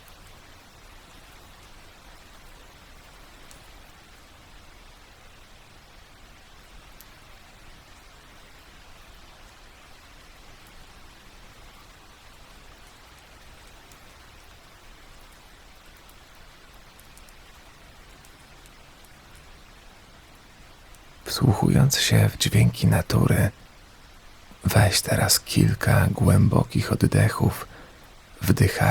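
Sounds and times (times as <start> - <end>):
steady rain falling: 0.0 - 28.9
raindrop ticks: 15.2 - 20.2.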